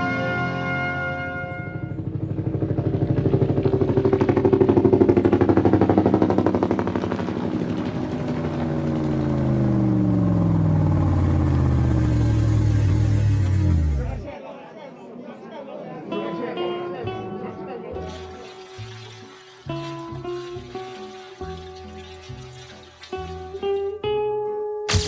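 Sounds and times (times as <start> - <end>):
engine running with pulsing beat: 2.0 - 14.3
sustained musical tones: 16.1 - 24.2.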